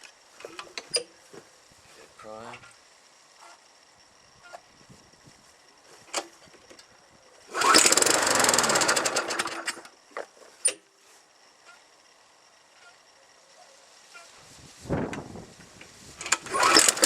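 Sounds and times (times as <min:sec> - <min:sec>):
small engine firing rapidly: 0:07.5 - 0:09.8, 0:16.2 - 0:17.0.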